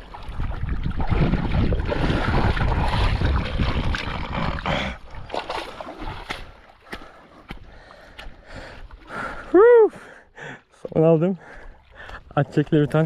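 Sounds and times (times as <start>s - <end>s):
wind buffeting microphone: 0.2s - 4.6s.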